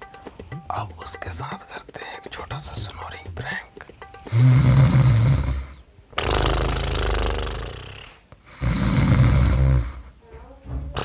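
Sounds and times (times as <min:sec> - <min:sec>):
loud rattling snoring: 0:04.3 - 0:10.0.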